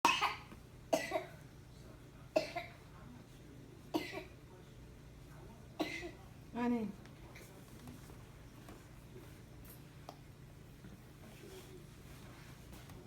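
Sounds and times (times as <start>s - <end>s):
toddler boy coughing: 0.0s - 1.4s, 2.4s - 2.8s, 3.9s - 4.4s, 5.8s - 6.2s.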